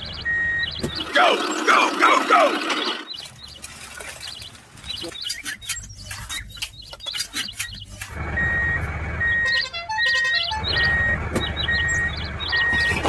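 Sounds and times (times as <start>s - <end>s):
reversing alarm beeping: 0.0s - 1.4s, 8.2s - 13.0s
birds chirping: 0.0s - 13.0s
vehicle engine rumbling: 0.0s - 13.0s.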